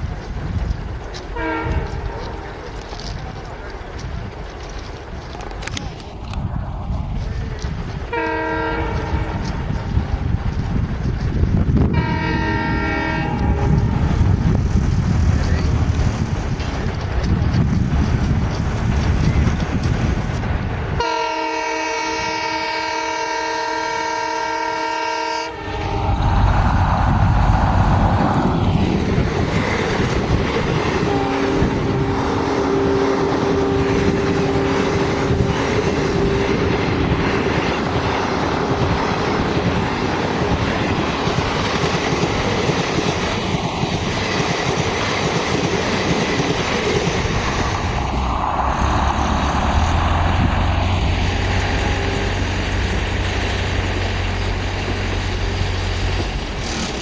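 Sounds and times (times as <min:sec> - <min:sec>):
train rushing past: 0:00.0 - 0:57.0
locomotive air horn chord: 0:01.4 - 0:02.0, 0:08.1 - 0:09.4, 0:11.9 - 0:13.9, 0:21.0 - 0:26.5, 0:31.0 - 0:35.4
wheels clattering over rail joints: 0:34.0 - 0:57.0.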